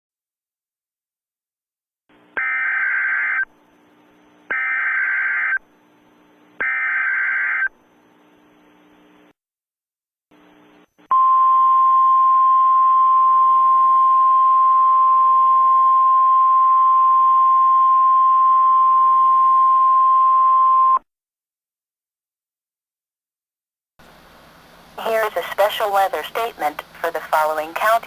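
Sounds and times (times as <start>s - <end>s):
faint radio hiss: 7.9s - 9.3s, 24.0s - 28.0s.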